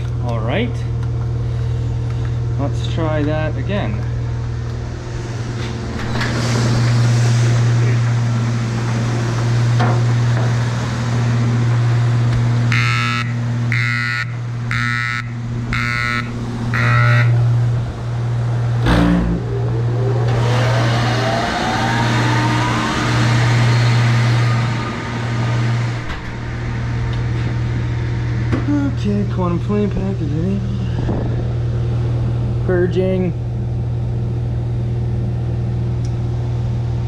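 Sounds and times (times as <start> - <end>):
grain dryer humming: 0.0 - 37.0
motor whine rising: 3.6 - 32.7
machine clunk: 5.5 - 11.0, 18.7 - 19.5.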